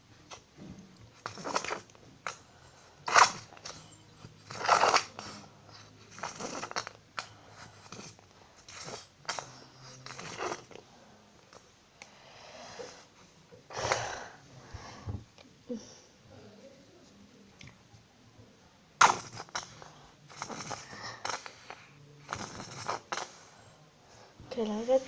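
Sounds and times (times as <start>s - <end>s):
plastic glue bottle crackling: 1.1s - 2.4s, 4.4s - 5.4s.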